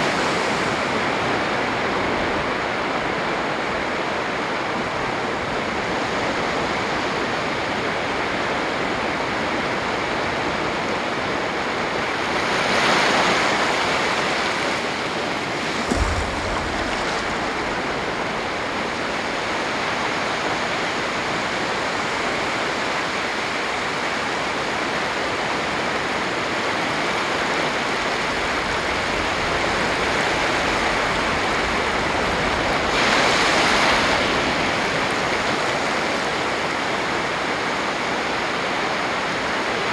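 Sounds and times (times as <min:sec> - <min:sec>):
waves breaking on a beach: 0:00.0 - 0:39.9
low thump: 0:15.5 - 0:19.6.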